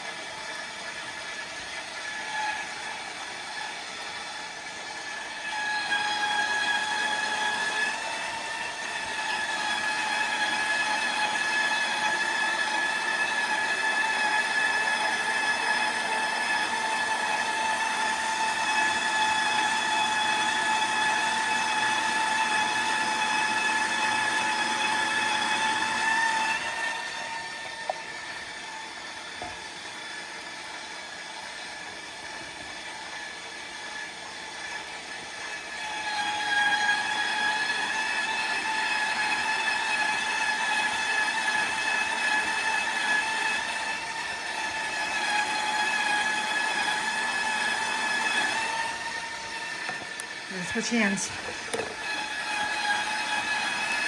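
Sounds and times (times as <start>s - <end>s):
stand mixer motor whine: 0.0s - 54.0s.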